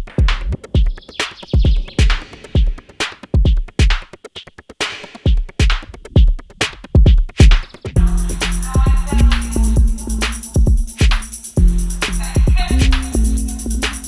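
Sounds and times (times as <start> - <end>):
electronic music with drum beat: 0.0 - 14.0.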